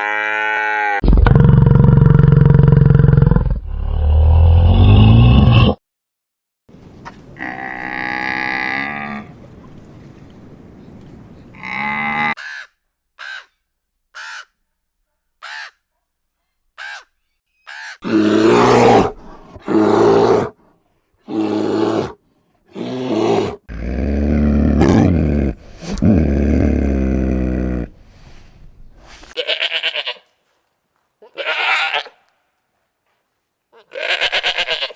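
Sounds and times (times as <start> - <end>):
loud harsh animal calls: 17.6 - 19.0.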